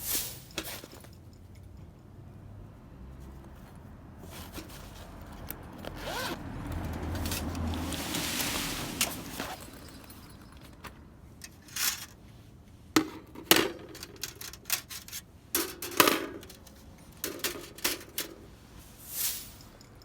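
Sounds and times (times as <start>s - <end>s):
metal plates clinking and clattering: 0.0s - 1.6s, 7.1s - 12.2s, 13.0s - 20.0s.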